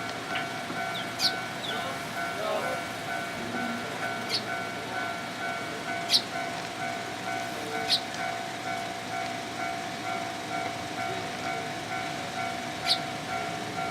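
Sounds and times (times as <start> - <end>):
level-crossing warning bell: 0.0 - 13.9
sparrow chirp: 0.9 - 1.8, 6.1 - 6.3, 12.8 - 13.1.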